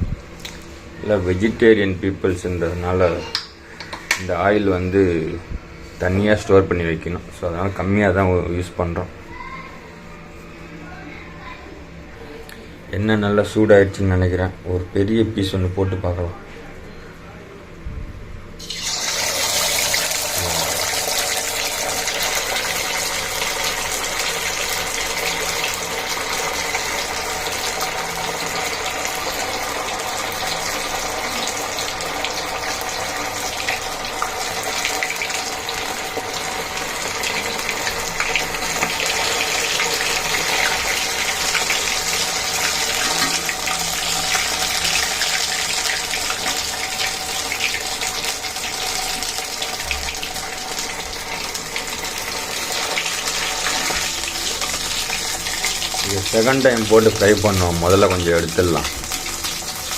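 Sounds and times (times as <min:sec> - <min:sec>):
chicken deep-frying in hot oil: 0:18.6 - 0:59.9.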